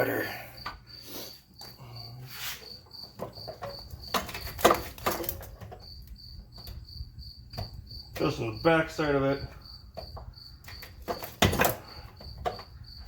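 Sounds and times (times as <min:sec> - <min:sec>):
crickets chirping: 0:00.0 - 0:13.0
parts clattering by hand: 0:01.6 - 0:06.8, 0:09.4 - 0:13.0.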